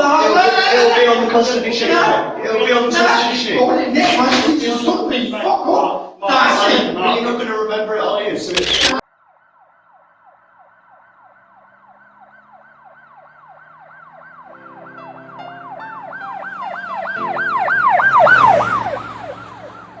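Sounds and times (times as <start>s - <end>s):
emergency siren yelping: 8.6s - 20.0s.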